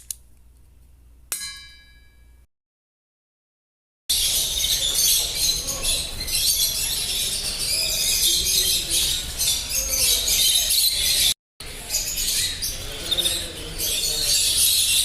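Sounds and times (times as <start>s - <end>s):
small birds chirping: 4.1s - 15.0s.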